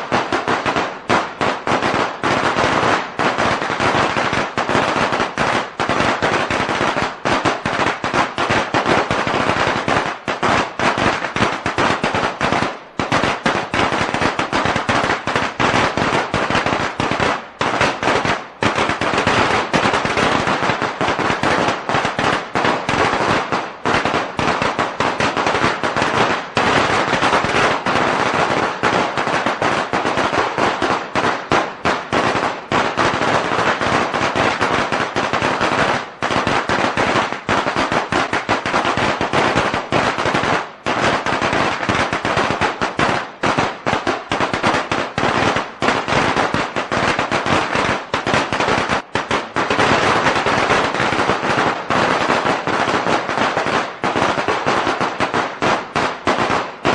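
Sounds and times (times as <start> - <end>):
firecrackers cracking: 0.0 - 56.9.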